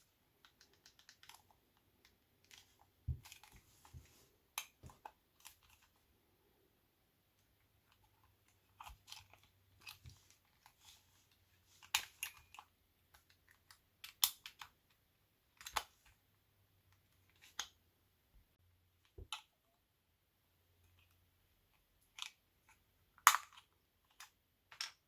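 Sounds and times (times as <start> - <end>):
plastic housing clicking and snapping: 0.4 - 1.5, 11.8 - 14.8, 15.6 - 15.9, 22.1 - 25.0.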